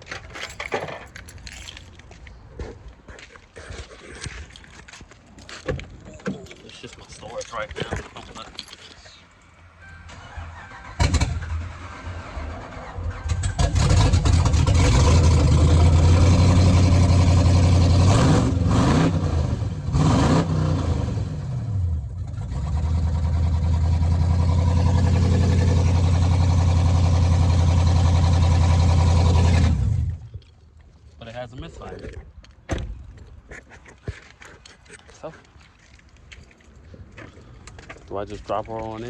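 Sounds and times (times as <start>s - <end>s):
car engine starting: 0.1s - 1.9s, 10.1s - 30.3s.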